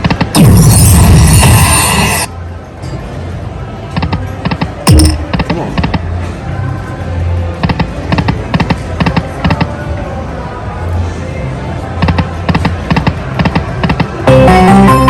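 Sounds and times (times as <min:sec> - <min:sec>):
sharp electronic hits: 0:00.0 - 0:02.3, 0:04.0 - 0:06.0
slot machine music: 0:13.9 - 0:15.0.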